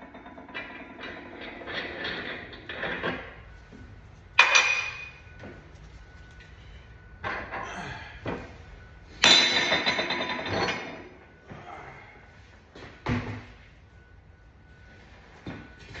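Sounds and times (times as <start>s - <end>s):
sharp ringing metal strike: 9.2s - 10.8s.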